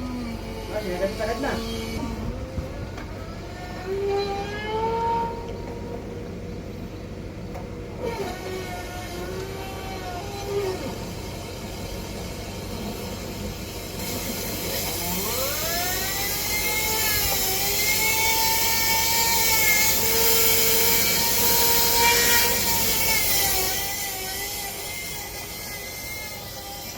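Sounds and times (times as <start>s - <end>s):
electric motor whining: 0.0s - 26.9s.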